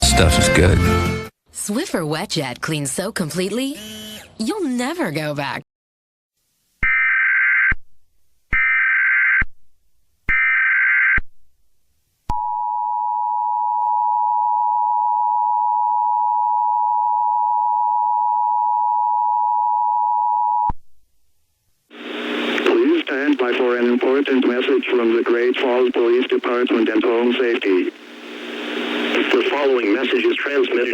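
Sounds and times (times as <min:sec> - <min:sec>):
buzzy data bursts: 0:21.9 - 0:29.6.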